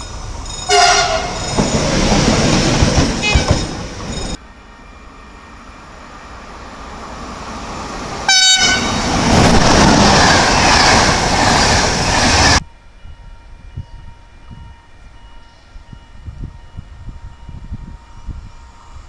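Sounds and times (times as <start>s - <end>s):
train passing: 0.0s - 19.0s
train horn blast: 0.7s - 1.5s, 3.1s - 3.8s, 8.2s - 9.1s.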